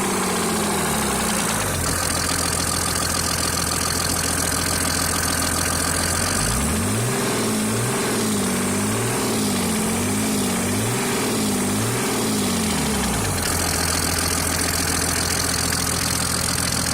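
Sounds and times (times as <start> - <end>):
engine knocking: 0.0 - 6.8, 12.0 - 16.9
diesel engine idling and revving: 0.0 - 16.9.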